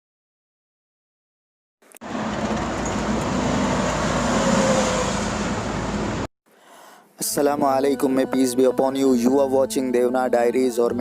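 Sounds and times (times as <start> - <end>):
road traffic noise: 1.9 - 6.3.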